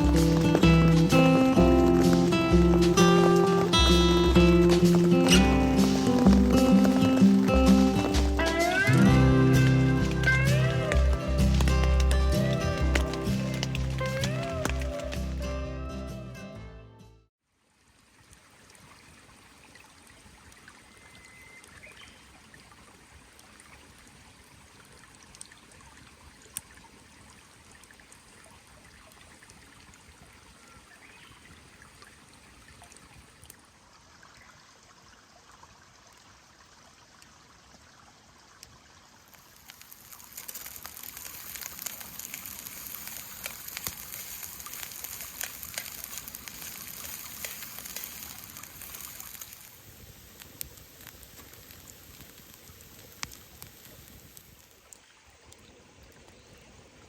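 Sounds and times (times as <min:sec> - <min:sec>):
raindrops ticking: 0:00.0 - 0:15.6, 0:39.3 - 0:55.0
rain falling: 0:00.0 - 0:15.8, 0:39.1 - 0:55.6.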